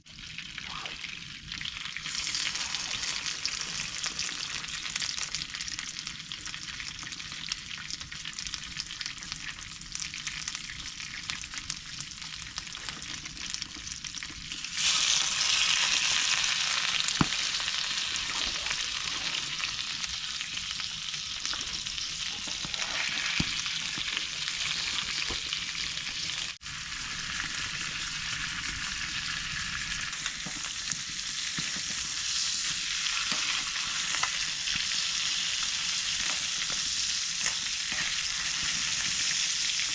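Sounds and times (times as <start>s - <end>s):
food sizzling in hot pan: 0.0s - 39.9s.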